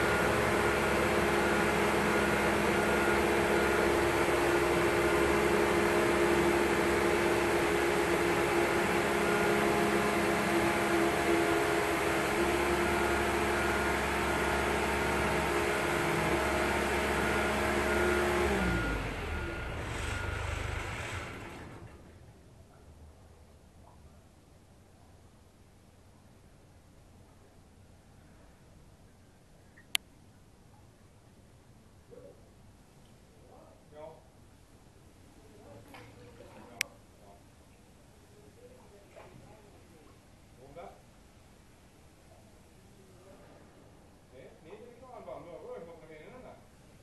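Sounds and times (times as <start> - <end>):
heavy machinery humming: 0.0 - 22.2.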